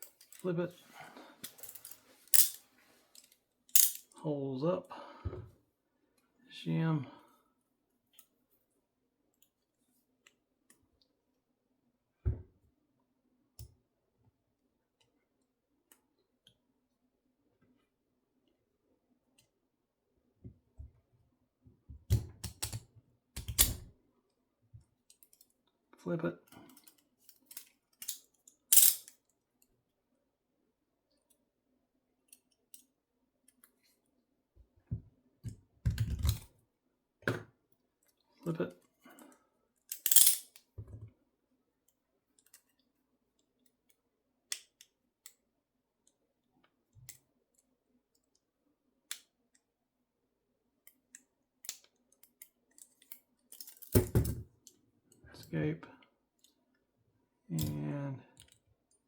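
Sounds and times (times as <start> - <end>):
handcuffs clicking and knocking: 1.4 - 2.6, 3.2 - 4.1, 22.1 - 23.9, 26.7 - 29.3, 39.9 - 40.7, 51.6 - 54.4.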